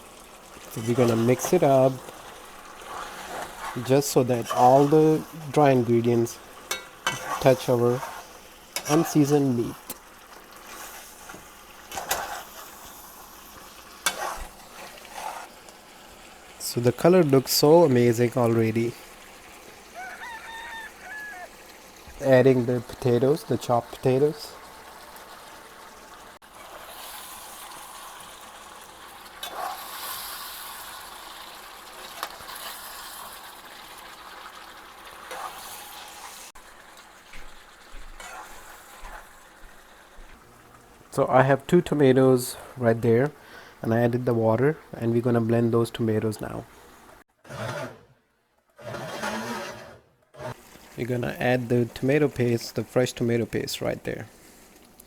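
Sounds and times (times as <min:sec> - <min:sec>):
meat sizzling in oil: 0:00.0 - 0:41.1
stirring in pot: 0:00.1 - 0:16.3, 0:29.0 - 0:36.6, 0:37.4 - 0:40.7
spoon scraping a pot: 0:06.7 - 0:09.3, 0:10.7 - 0:12.8, 0:14.0 - 0:15.5.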